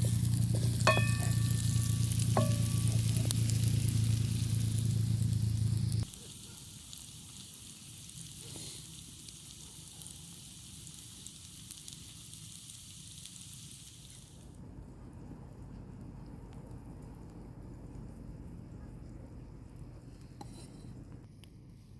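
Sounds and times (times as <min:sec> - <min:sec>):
food sizzling in a frying pan: 0:00.0 - 0:14.6.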